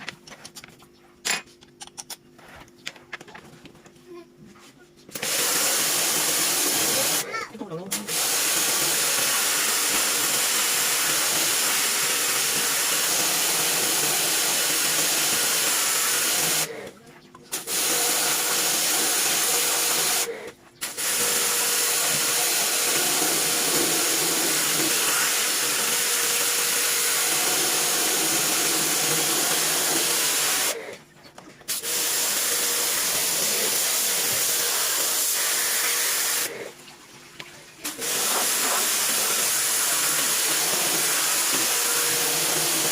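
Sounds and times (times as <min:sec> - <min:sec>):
high-pressure water spray hissing: 0:05.2 - 0:07.3, 0:07.9 - 0:16.7, 0:17.5 - 0:30.8, 0:31.7 - 0:36.6, 0:37.9 - 0:42.9.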